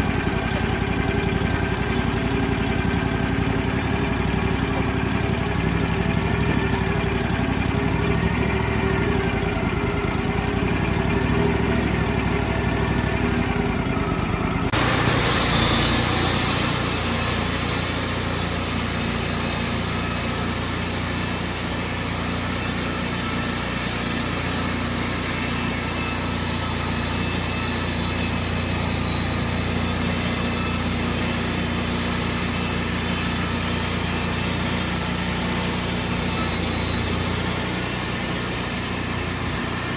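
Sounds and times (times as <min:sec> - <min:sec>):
sawmill engine running: 0:00.0 - 0:39.9
strong hiss: 0:14.8 - 0:28.6.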